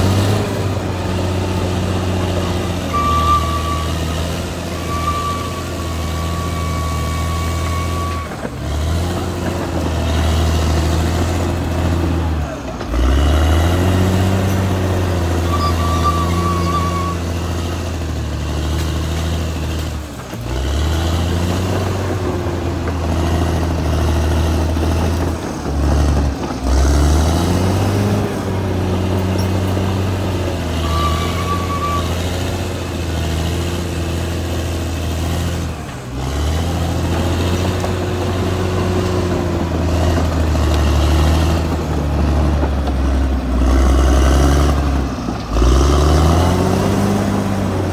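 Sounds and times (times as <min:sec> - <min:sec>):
bulldozer diesel engine running hard: 0:00.0 - 0:47.9.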